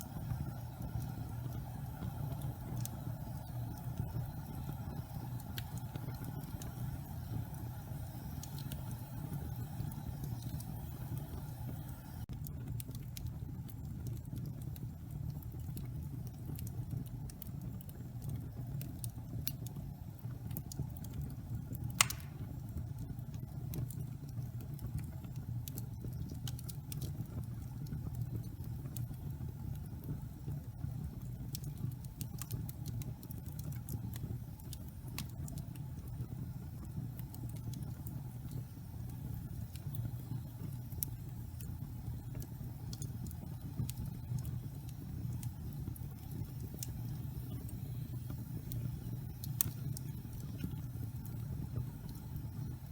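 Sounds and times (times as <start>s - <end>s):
wood fire crackling: 0.0s - 52.9s
loud pop of fire: 21.9s - 22.6s.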